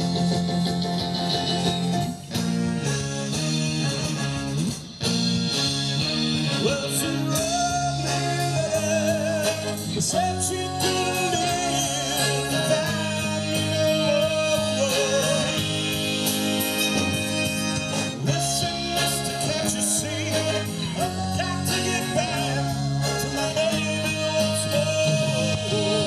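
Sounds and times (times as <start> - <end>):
bluesy rock band playing: 0.0 - 26.0.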